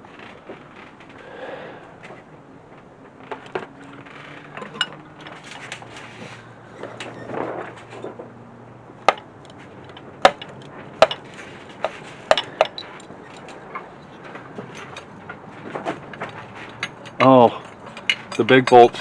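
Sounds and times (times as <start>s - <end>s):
brief rustle: 3.3s - 8.2s
hand tools clinking on metal: 4.5s - 6.0s, 9.0s - 19.0s.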